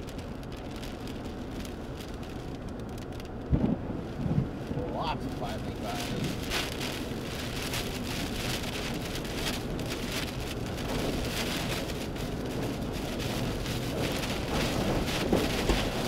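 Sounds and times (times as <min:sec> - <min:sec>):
wind-driven rain beating on vehicle: 0:00.0 - 0:16.0.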